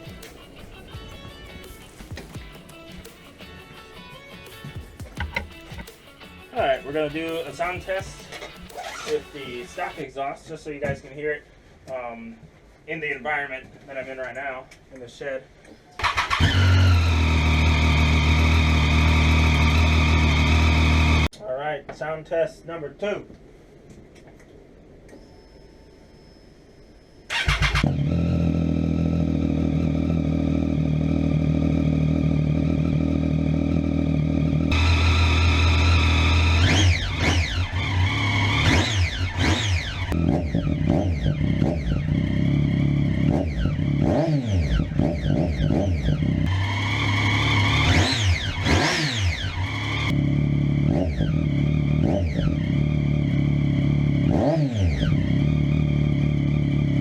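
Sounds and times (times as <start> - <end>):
motorcycle engine starting: 4.7 - 6.0, 6.9 - 10.0, 16.0 - 21.3, 27.3 - 57.0
motorcycle engine revving: 8.2 - 10.0, 16.0 - 21.3, 27.3 - 57.0.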